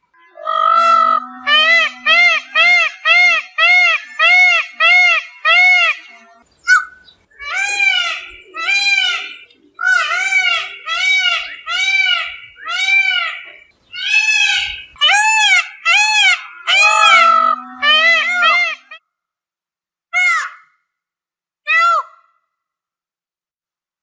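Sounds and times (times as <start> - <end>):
peacock calling: 0.3 - 19.0.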